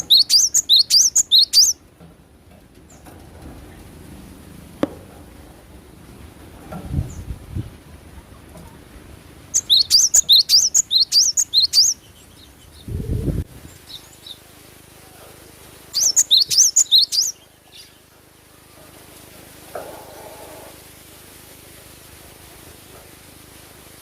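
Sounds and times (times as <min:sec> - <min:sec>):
bird chattering chirps: 0:00.0 - 0:01.8, 0:09.5 - 0:13.0, 0:15.9 - 0:18.0
low thump: 0:04.8 - 0:05.3.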